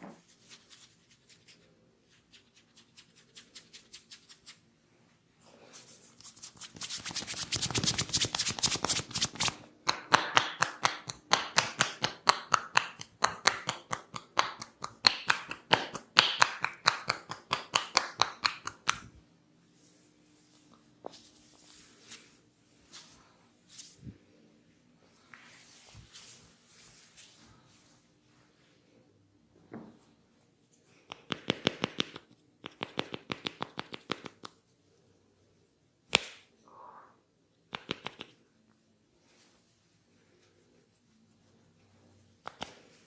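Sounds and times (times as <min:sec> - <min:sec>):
hands slapping in massage strokes: 0:06.4 - 0:19.2, 0:31.0 - 0:34.6, 0:36.1 - 0:36.5, 0:37.7 - 0:38.4, 0:42.4 - 0:43.0.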